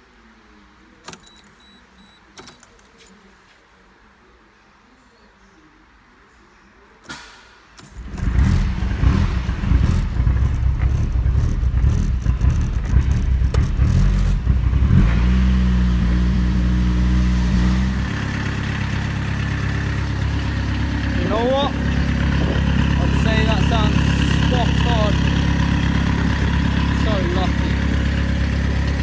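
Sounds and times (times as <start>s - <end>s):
diesel engine starting and idling: 7.8s - 29.0s.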